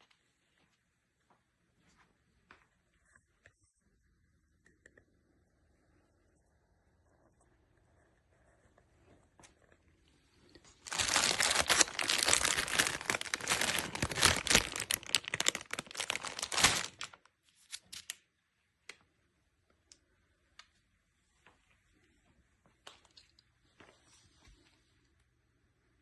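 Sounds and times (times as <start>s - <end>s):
packaging material crinkling: 10.7s - 18.2s.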